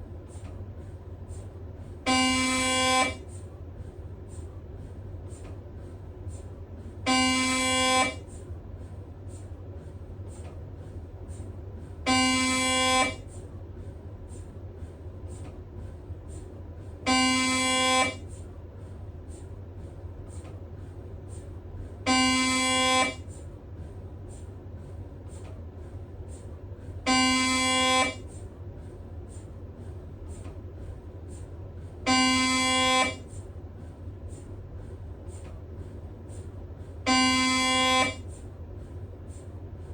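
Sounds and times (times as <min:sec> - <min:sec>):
steady low hum: 0:00.0 - 0:39.9
mri scanner buzzing tones: 0:02.0 - 0:03.4, 0:07.0 - 0:08.4, 0:12.0 - 0:13.4, 0:17.0 - 0:18.4, 0:22.0 - 0:23.4, 0:26.4 - 0:28.5, 0:32.0 - 0:33.5, 0:36.9 - 0:38.4.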